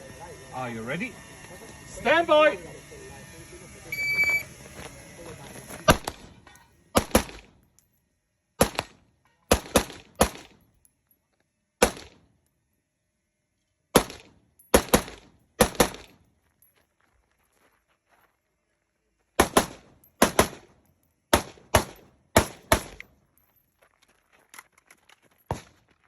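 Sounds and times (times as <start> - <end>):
rifle shots: 5.9 - 6.4, 7.0 - 7.5, 8.6 - 10.6, 11.8 - 12.2, 13.9 - 16.2, 19.4 - 20.7, 21.3 - 23.1.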